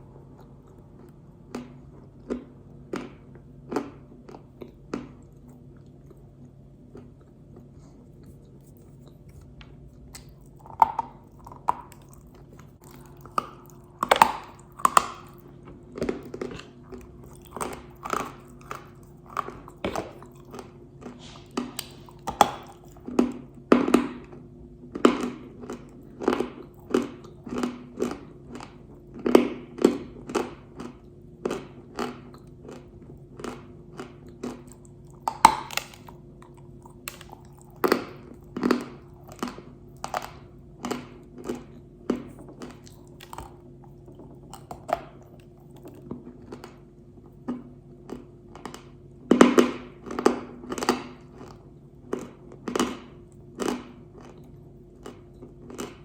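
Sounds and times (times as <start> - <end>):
clay crunching as it's chewed: 0.0 - 56.0.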